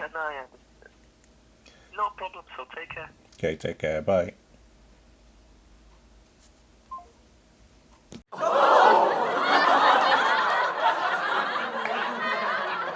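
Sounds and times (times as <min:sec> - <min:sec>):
loud laughter: 0:08.4 - 0:12.9.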